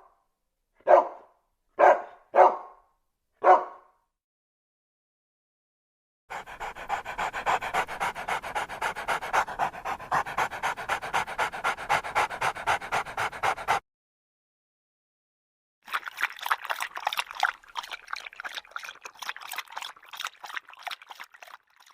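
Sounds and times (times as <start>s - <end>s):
dog panting: 6.3s - 13.8s.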